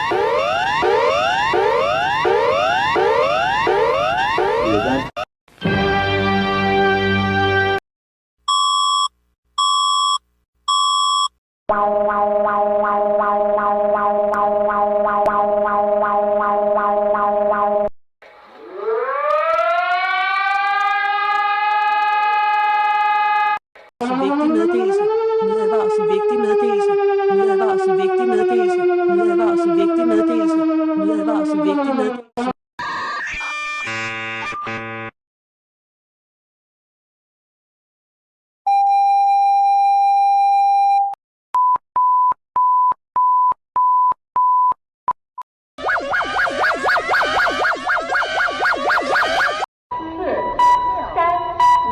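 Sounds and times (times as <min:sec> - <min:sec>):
buzzing alarm tone: 0:00.0 - 0:05.2, 0:33.8 - 0:35.1, 0:45.8 - 0:49.7
siren winding up: 0:00.0 - 0:05.2, 0:11.7 - 0:31.8, 0:45.8 - 0:51.9
short electronic beeps: 0:08.5 - 0:11.4.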